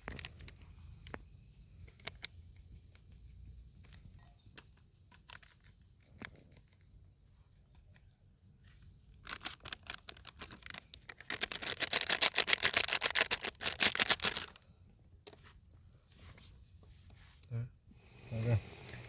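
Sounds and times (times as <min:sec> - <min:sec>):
rapid dry clicks: 0:09.2 - 0:14.6.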